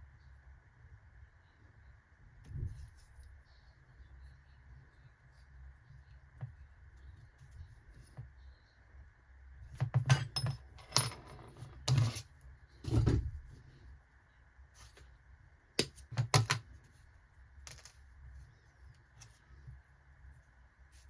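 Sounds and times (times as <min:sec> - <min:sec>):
metal parts and tools clinking: 0:09.8 - 0:12.2.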